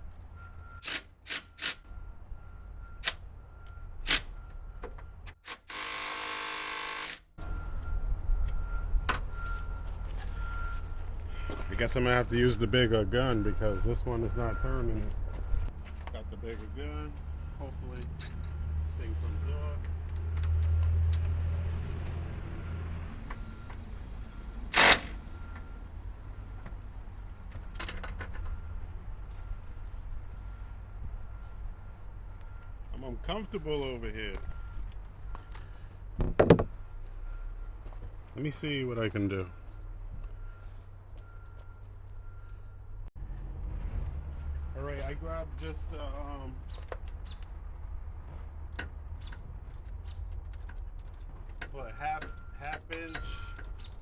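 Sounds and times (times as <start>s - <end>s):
impact wrench burst: 0.8s - 1.8s, 5.4s - 7.4s, 24.8s - 25.2s
impact gun hammering: 24.8s - 25.2s.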